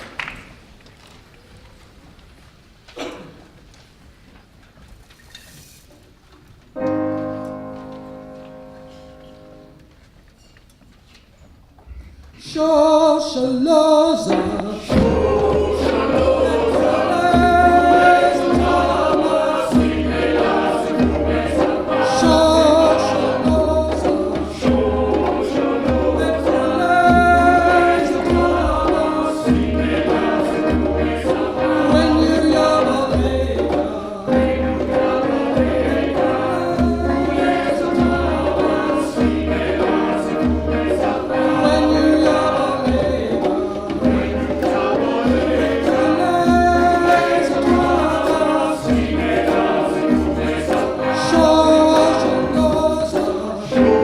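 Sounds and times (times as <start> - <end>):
choir singing in parts: 13.9 - 54.0.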